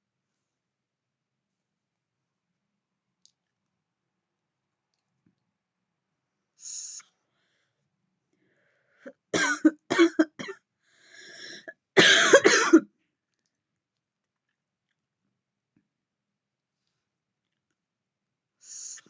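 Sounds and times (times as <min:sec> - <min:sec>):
breath: 0:07.2 - 0:07.8, 0:08.4 - 0:09.1, 0:10.8 - 0:11.7
woman coughing: 0:09.1 - 0:10.6, 0:12.0 - 0:12.9.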